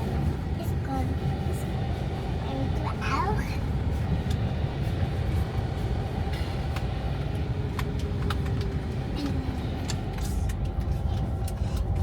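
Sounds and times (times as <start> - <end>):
car engine and road rumble: 0.0 - 12.0
light clicks and rattles: 6.7 - 12.0.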